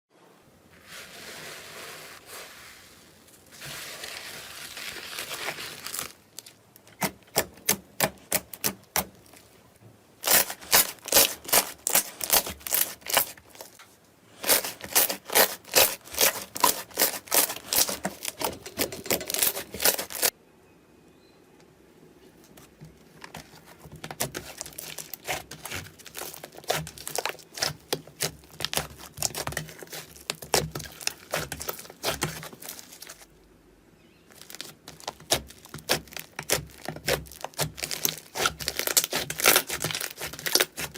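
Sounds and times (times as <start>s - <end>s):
slime squished by hand: 24.1s - 33.2s, 34.3s - 40.9s.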